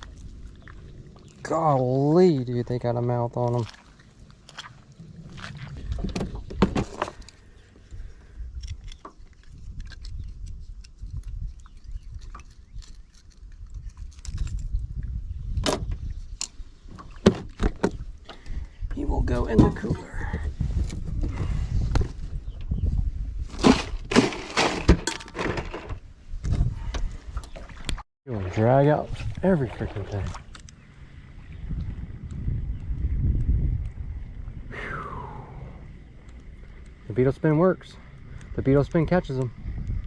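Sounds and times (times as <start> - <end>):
low rumble: 28.4 - 40.0.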